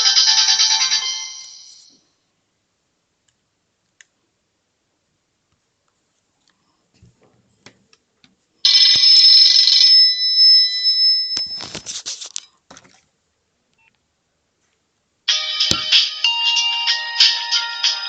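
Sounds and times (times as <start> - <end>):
phone ringtone melody: 15.3 - 18.0.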